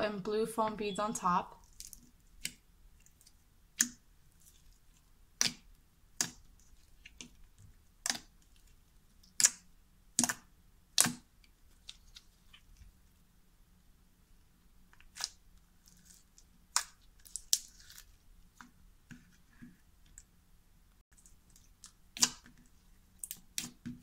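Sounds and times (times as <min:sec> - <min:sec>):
slime popping and crackling: 0:01.6 - 0:12.6, 0:15.0 - 0:18.2, 0:21.2 - 0:24.0.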